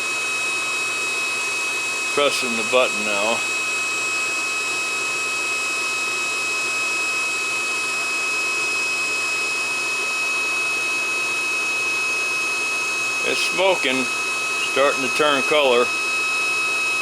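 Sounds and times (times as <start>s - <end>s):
induction heater whirring: 0.0s - 17.0s
thin high whine: 2.1s - 3.5s, 13.1s - 16.2s.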